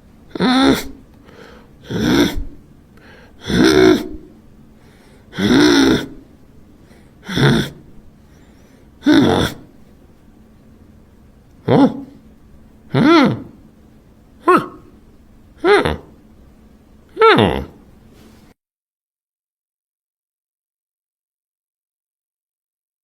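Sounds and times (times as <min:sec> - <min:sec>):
person gasping in surprise: 0:00.3 - 0:04.2.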